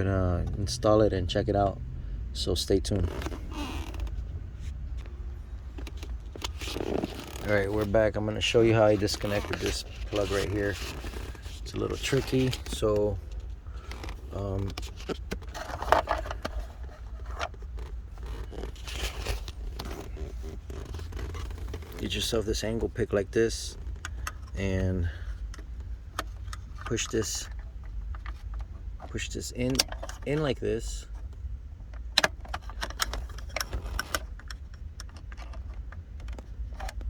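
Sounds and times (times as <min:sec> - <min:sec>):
steady low hum: 0:00.0 - 0:37.0.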